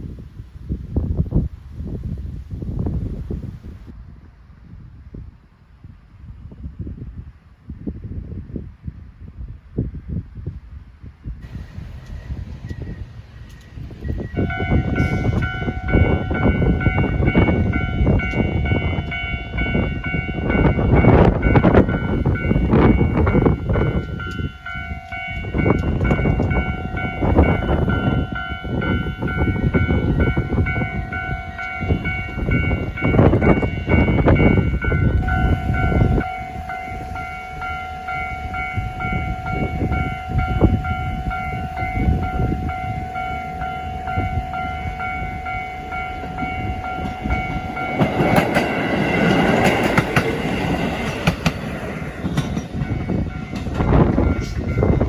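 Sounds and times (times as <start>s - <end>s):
diesel train passing: 0.0s - 55.0s
train wheels clacking: 11.4s - 55.0s
level-crossing bell ringing: 14.0s - 55.0s.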